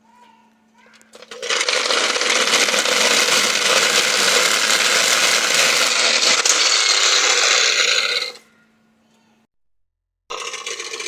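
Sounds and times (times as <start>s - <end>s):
noisemaker clattering on bicycle spokes: 1.0s - 8.4s.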